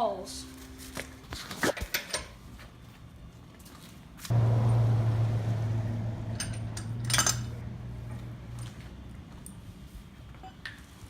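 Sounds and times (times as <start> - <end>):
low mechanical hum: 0.0 - 11.0
light metal clinks: 6.1 - 8.8.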